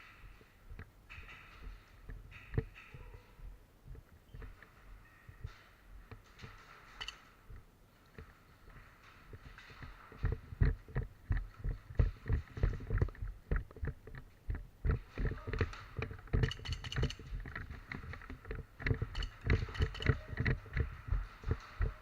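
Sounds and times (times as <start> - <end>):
gear rattling against body: 0.7 - 22.0
sharp clicking: 10.2 - 22.0.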